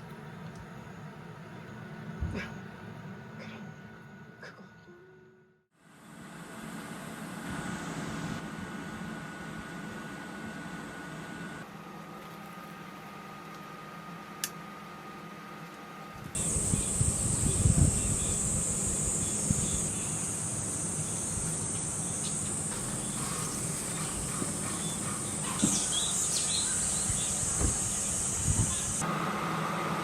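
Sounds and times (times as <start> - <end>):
insects buzzing: 16.4 - 29.0.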